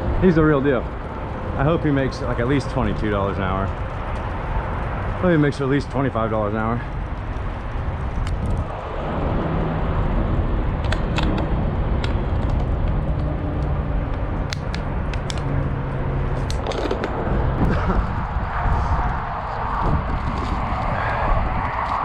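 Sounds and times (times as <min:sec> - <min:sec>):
engine droning: 0:00.0 - 0:22.0
sharp clicks: 0:10.8 - 0:15.6.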